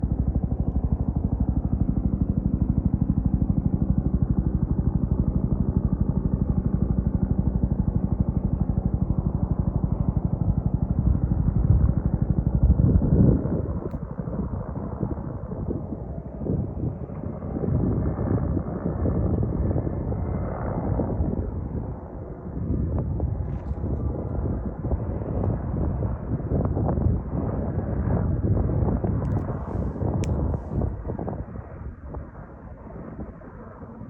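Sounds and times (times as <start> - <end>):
helicopter rotor thumping: 29.1 - 30.9.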